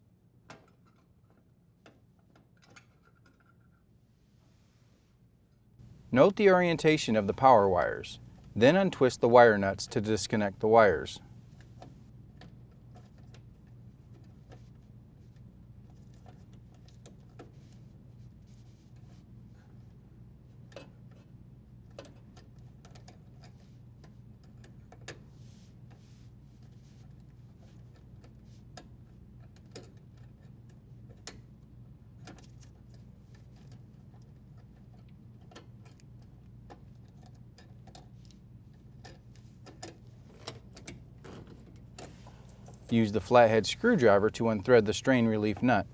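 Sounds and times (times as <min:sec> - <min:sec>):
steady low hum: 0:05.8 - 0:12.0, 0:42.2 - 0:45.9.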